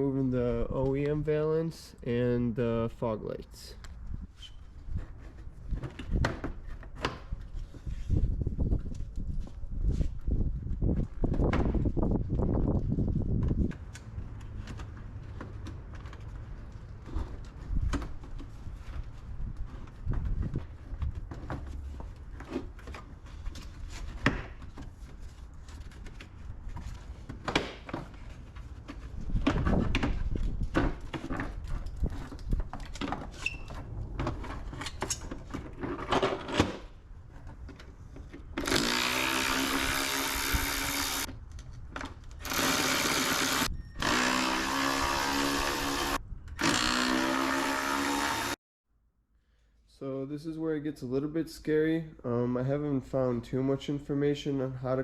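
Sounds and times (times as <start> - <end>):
cordless drill running: 38.6 - 41.3, 42.4 - 48.6.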